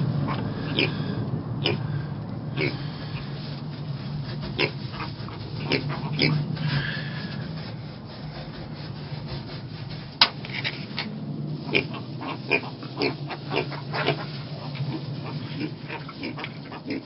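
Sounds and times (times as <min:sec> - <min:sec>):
piglets squeaking and grunting: 0:00.0 - 0:01.0, 0:01.6 - 0:01.9, 0:02.5 - 0:03.5, 0:04.1 - 0:06.6, 0:11.6 - 0:17.0
low steady hum: 0:00.0 - 0:17.0
rustling and scraping: 0:02.6 - 0:17.0.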